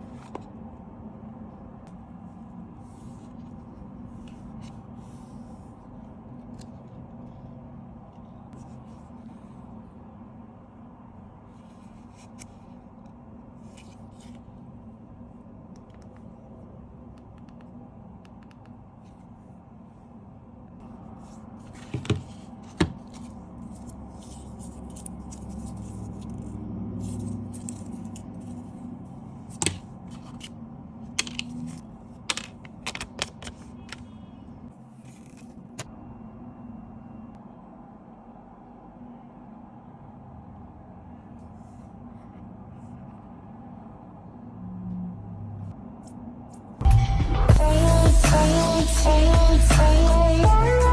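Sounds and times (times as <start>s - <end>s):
steady low hum: 0.0s - 32.3s.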